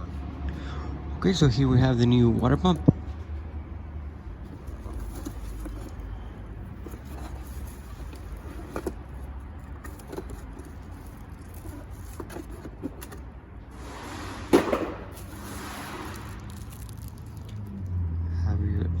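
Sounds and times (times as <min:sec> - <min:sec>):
loud clunk: 0:13.8 - 0:16.4.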